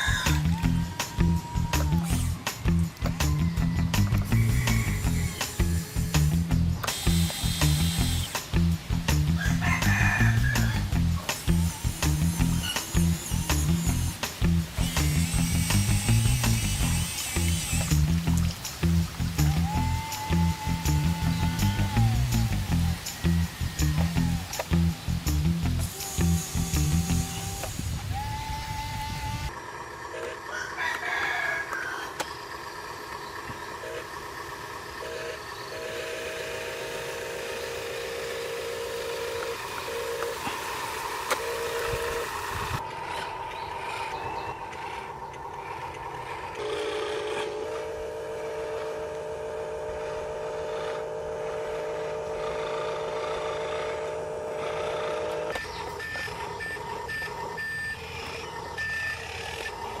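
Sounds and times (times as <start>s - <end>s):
toy electric motors whirring: 0.0s - 29.6s, 35.0s - 60.0s
reversing beeper: 35.0s - 37.6s, 55.5s - 60.0s.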